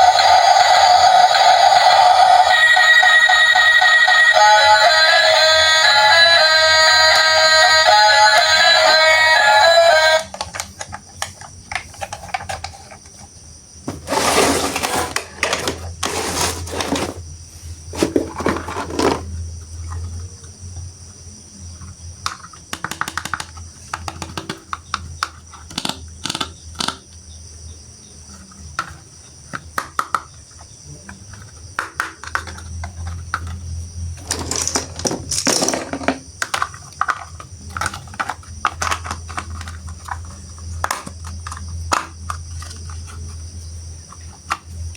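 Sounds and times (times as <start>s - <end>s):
music: 0.0s - 10.4s
plastic toy pieces clicking: 10.2s - 13.0s, 22.2s - 27.1s, 34.2s - 43.0s
packaging rustling: 13.9s - 17.2s, 17.9s - 19.3s.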